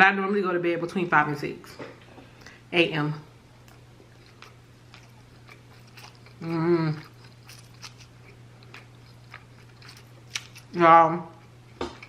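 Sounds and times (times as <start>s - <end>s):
faint low hum: 0.0s - 12.0s
chewing food: 3.6s - 12.0s
person humming: 6.4s - 7.1s.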